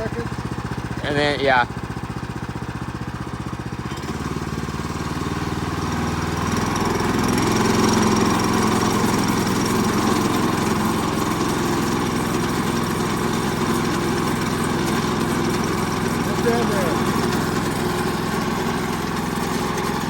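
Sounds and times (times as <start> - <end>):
small gas engine running: 0.0 - 20.0.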